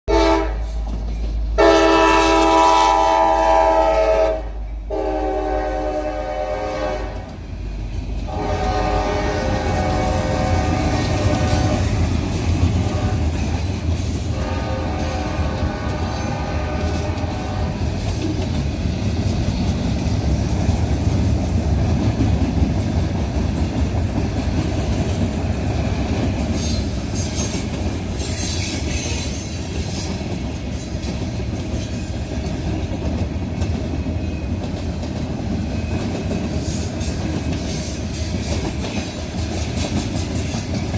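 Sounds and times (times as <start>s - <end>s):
train horn blasts: 0.1s - 0.8s, 1.6s - 7.3s, 8.3s - 13.6s, 14.3s - 18.0s
locomotive rumbling past: 0.1s - 40.9s
train cars clicking over rail joints: 0.6s - 1.7s, 7.1s - 40.9s
high wheel squeal: 26.6s - 31.0s.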